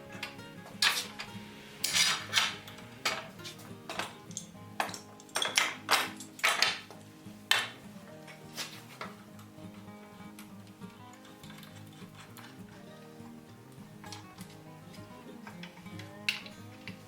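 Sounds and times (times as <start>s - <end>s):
background music sustained notes: 0.0s - 17.0s
hand tools striking wood: 0.2s - 9.2s.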